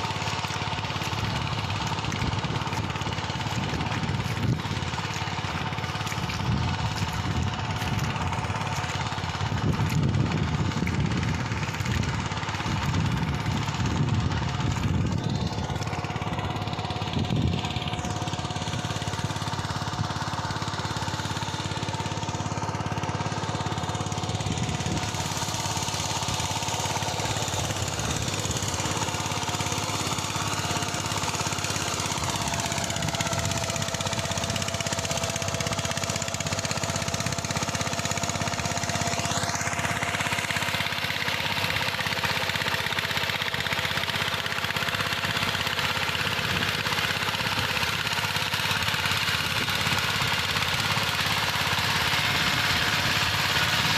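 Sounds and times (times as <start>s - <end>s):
engine running with rapid knocking: 0.0s - 53.9s.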